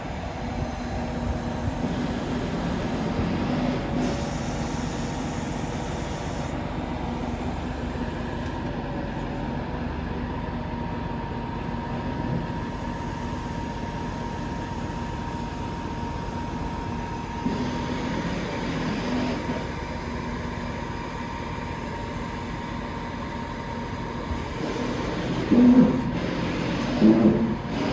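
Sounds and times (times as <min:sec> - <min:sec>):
diesel engine droning: 0:00.0 - 0:27.9.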